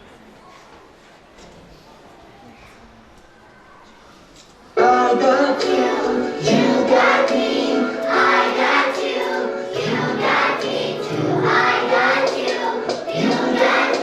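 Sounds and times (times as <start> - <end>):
children singing song: 4.8 - 14.0.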